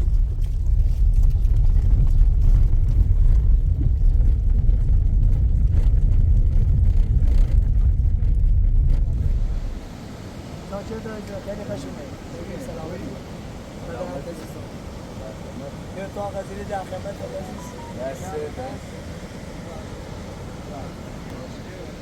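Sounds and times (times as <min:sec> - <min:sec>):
loud low rumble: 0:00.0 - 0:09.8.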